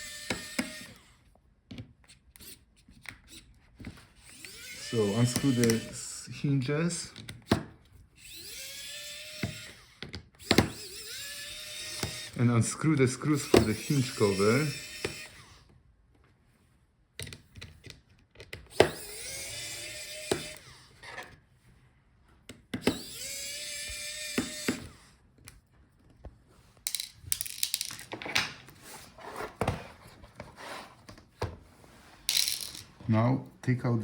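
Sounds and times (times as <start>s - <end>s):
electric screwdriver motor whining: 0.0s - 1.2s, 2.4s - 7.6s, 8.2s - 15.7s, 18.7s - 21.4s, 22.8s - 25.1s
light clicks of screws and tool: 5.3s - 5.9s.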